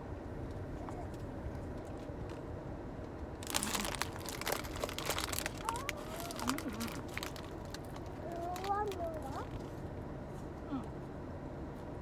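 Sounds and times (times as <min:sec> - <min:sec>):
bag of nuts crinkling: 0:03.4 - 0:09.6.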